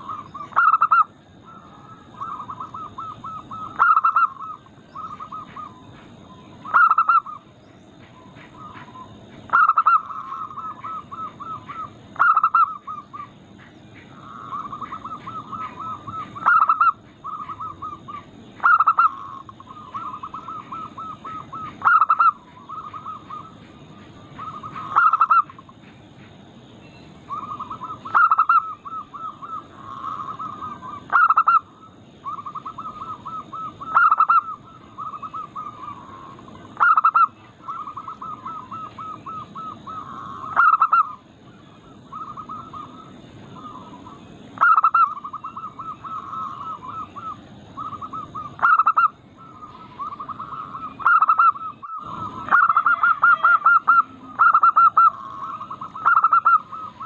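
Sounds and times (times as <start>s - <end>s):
doves cooing: 0.0s - 26.4s, 27.1s - 57.0s.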